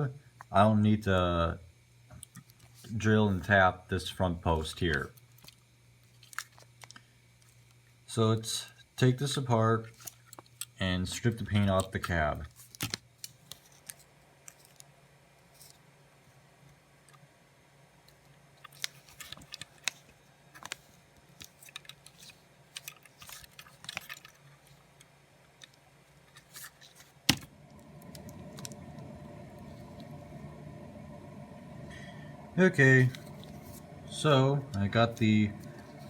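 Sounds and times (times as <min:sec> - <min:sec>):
steady low hum: 0:27.2 - 0:36.0.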